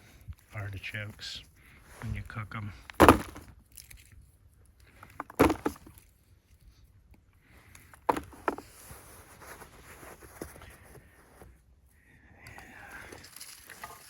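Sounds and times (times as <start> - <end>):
digging thuds: 2.0 - 3.6, 5.0 - 6.0, 7.9 - 8.9
scraping in soil: 8.2 - 11.6.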